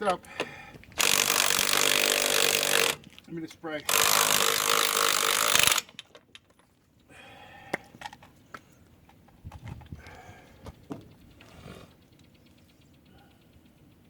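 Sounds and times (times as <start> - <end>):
faint handling clicks and knocks: 7.7 - 11.5.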